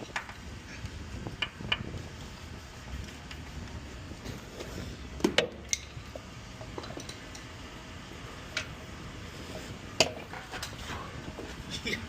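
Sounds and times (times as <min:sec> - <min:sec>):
sharp clicks and knocks: 0:01.4 - 0:02.0.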